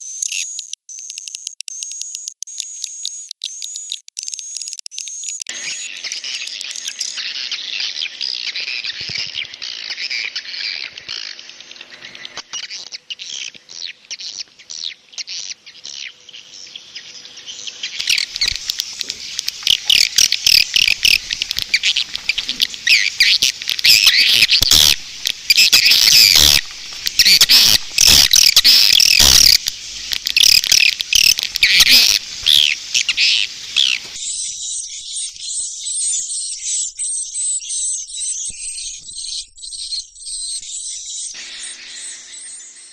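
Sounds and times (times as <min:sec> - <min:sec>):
swiftlets twittering and chirping: 0:00.0 - 0:42.9
sharp clicks: 0:18.0 - 0:34.2.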